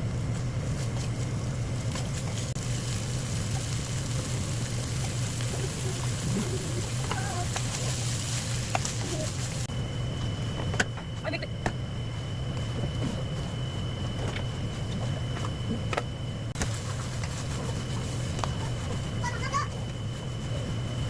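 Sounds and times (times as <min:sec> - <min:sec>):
constant low hum: 0:00.0 - 0:21.0
food sizzling in a frying pan: 0:02.4 - 0:09.7.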